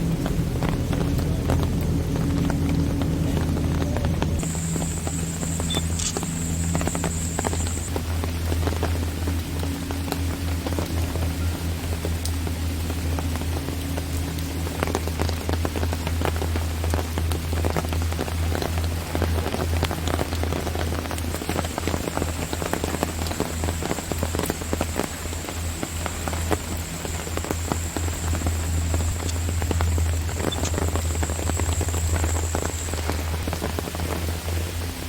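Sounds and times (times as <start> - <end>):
low rumble: 0.0 - 35.0
rain on foliage: 0.0 - 35.0
thin high whine: 4.4 - 8.2, 24.2 - 33.4.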